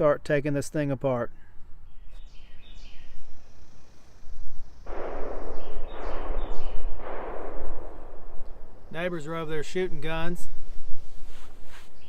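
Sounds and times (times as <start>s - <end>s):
distant gunshots echoing: 4.9s - 10.0s.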